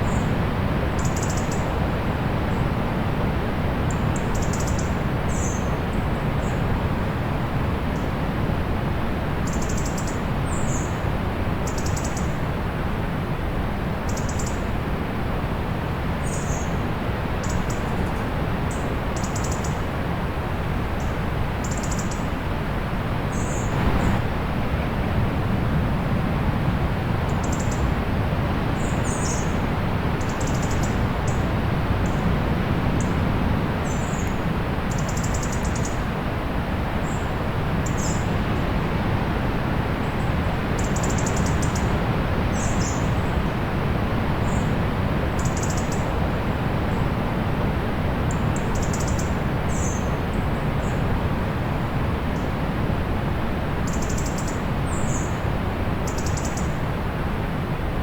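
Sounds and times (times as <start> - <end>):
distant sea surf: 22.3 - 58.0.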